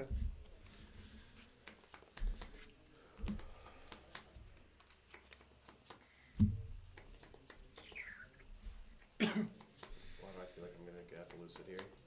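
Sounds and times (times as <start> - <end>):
cards shuffled on a tabletop: 0.6 - 6.1, 6.9 - 8.2, 11.2 - 12.0.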